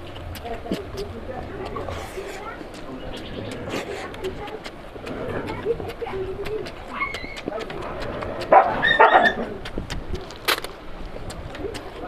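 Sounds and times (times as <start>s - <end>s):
dog barking: 8.5s - 9.5s.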